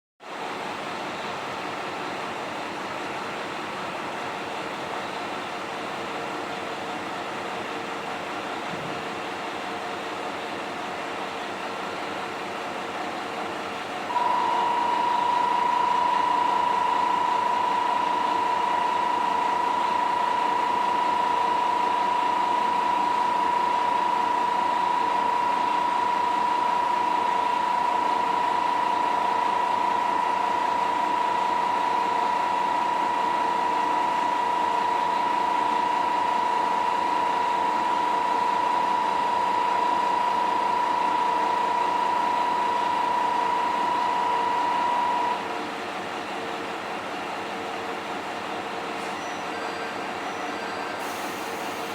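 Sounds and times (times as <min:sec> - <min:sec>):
diesel railcar idling: 0:00.3 - 0:51.9
high electronic tone: 0:14.1 - 0:35.0.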